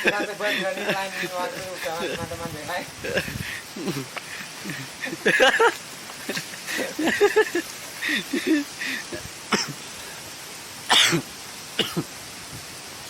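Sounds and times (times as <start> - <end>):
person coughing: 9.5 - 9.8, 10.9 - 11.2, 11.8 - 12.1.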